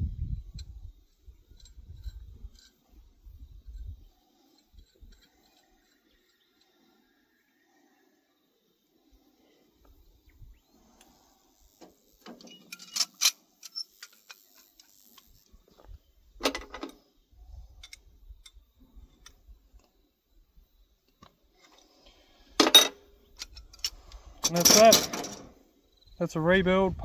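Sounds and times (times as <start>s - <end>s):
tools clicking and tapping on metal: 11.8s - 14.7s, 16.4s - 17.0s, 22.6s - 25.5s
metal clatter: 24.4s - 25.5s.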